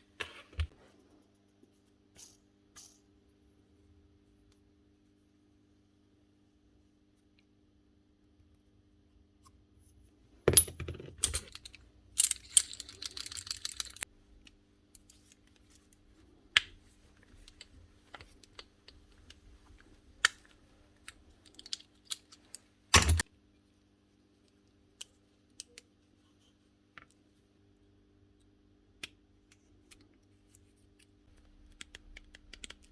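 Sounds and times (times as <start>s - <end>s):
metal parts clicking and clattering: 10.5s - 14.1s, 21.0s - 23.2s.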